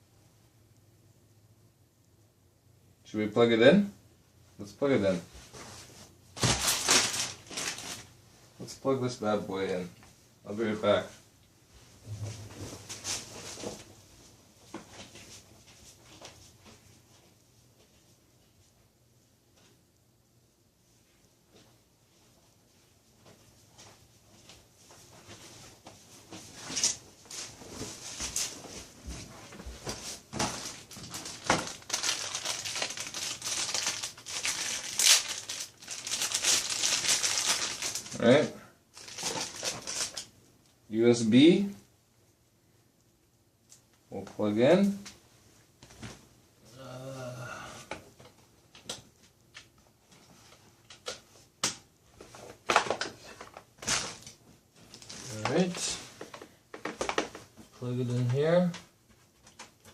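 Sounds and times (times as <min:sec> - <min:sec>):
packaging crinkling and rustling: 0:06.4 - 0:08.1, 0:29.9 - 0:38.3, 0:38.9 - 0:40.3, 0:52.2 - 0:57.6.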